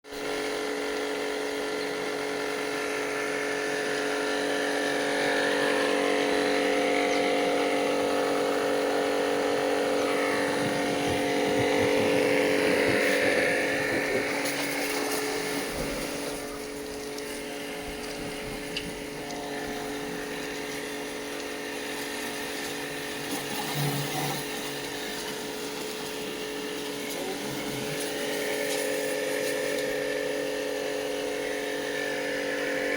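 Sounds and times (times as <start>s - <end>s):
pump motor humming: 0.1s - 32.9s
spray jet hissing: 10.0s - 30.2s.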